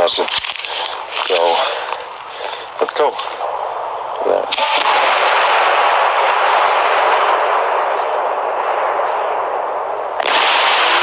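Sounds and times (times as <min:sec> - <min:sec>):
firework sharp burst: 0:03.2 - 0:11.0
firework hissing rush: 0:04.5 - 0:11.0.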